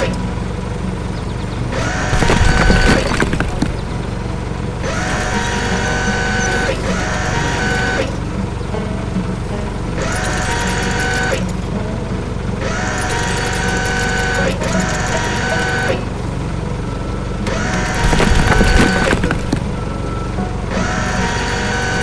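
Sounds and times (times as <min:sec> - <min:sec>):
background music with held notes: 0:00.0 - 0:02.2, 0:04.0 - 0:18.0, 0:19.6 - 0:22.0
rough crunching rumble with knocks: 0:00.9 - 0:08.5, 0:17.4 - 0:22.0.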